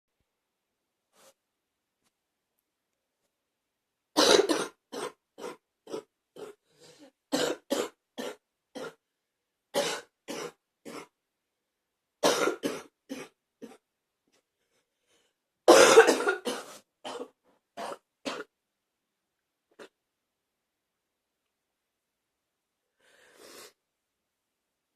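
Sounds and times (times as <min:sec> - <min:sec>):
person coughing: 0:04.2 - 0:06.6, 0:07.3 - 0:09.0, 0:09.8 - 0:11.2, 0:12.2 - 0:13.8, 0:15.7 - 0:18.5.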